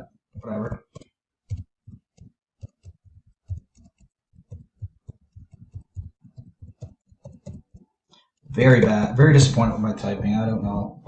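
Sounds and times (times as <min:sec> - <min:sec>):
computer keyboard typing: 0:00.4 - 0:08.0.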